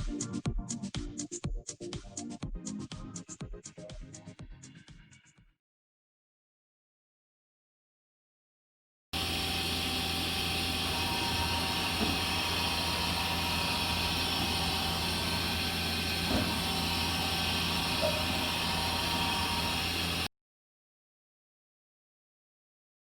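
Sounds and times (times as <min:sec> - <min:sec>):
lathe machine hum: 0:09.2 - 0:20.3.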